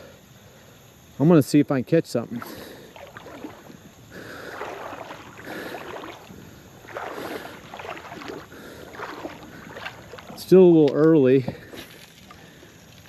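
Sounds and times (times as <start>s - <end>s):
water sloshing around legs: 2.3s - 10.7s.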